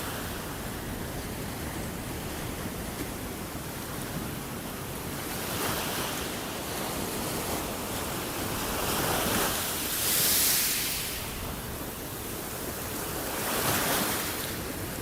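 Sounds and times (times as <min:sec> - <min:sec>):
ocean waves breaking: 0:05.1 - 0:15.0.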